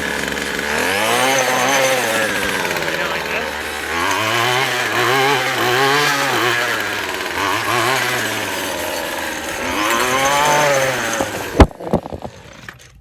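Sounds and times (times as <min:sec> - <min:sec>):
string trimmer engine revving: 0:00.0 - 0:12.8.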